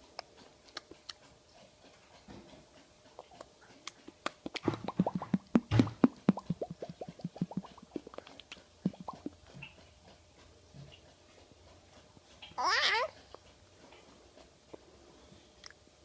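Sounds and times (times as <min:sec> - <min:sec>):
baby making lip pops: 0:03.2 - 0:09.4.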